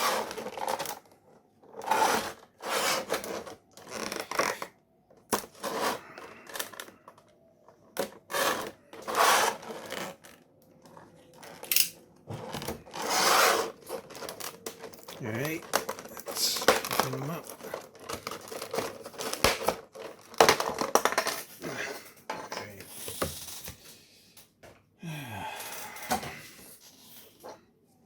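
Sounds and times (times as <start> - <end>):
plastic rustling: 0.0 - 21.6.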